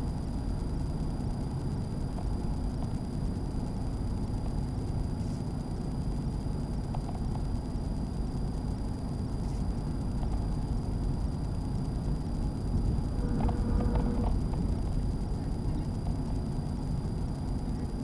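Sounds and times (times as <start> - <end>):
road and engine noise in cab: 0.0 - 18.0
faint clicks: 9.6 - 16.7.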